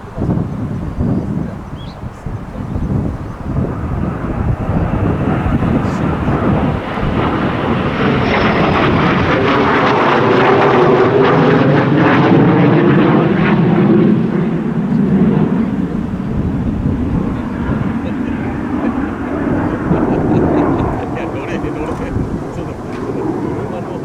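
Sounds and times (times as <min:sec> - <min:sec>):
jet passing by: 0:00.0 - 0:24.0.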